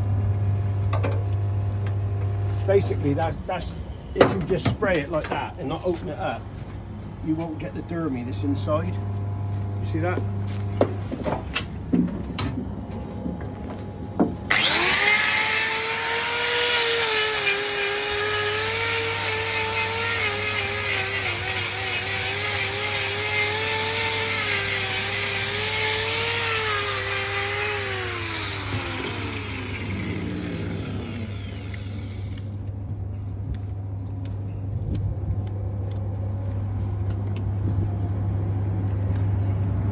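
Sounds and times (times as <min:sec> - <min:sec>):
steady low hum: 0:00.0 - 0:39.9
power tool motor whining: 0:14.5 - 0:32.6.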